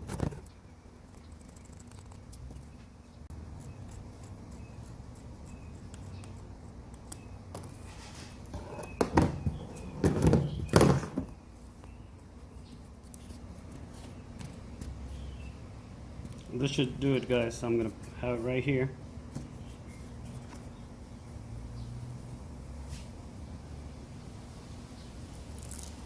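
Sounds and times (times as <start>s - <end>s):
handling knocks and rustles: 7.5s - 11.4s.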